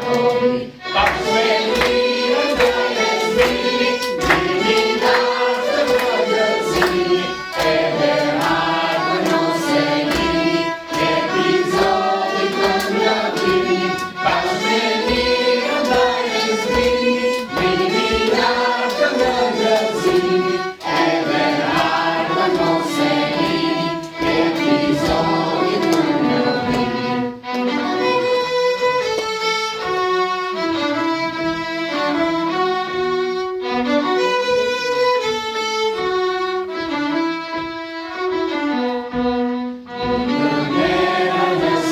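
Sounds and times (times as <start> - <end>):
choir singing a hymn: 0.0 - 28.5, 40.0 - 41.9
violin and strings: 0.0 - 41.9.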